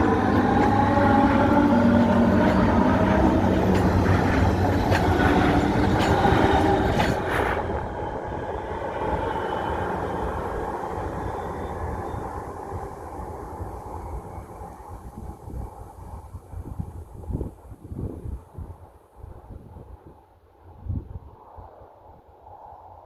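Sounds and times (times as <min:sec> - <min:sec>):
wheels clacking over rail joints: 0:00.0 - 0:11.7
train running over bridge: 0:00.0 - 0:16.8.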